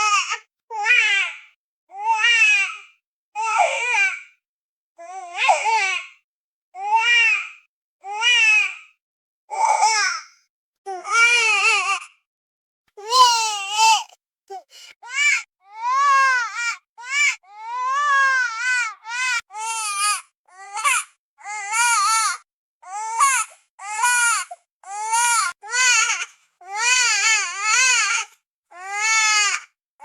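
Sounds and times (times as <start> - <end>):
baby crying: 0.0 - 2.8, 3.4 - 4.2, 9.5 - 10.2, 10.9 - 12.1, 13.0 - 29.7
baby gasping for breath: 14.5 - 15.0.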